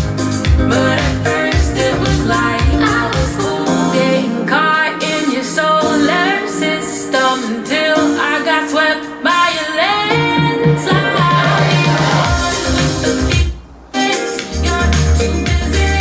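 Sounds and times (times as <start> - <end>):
deep bass: 0.0 - 3.5
pop song with singing: 0.0 - 16.0.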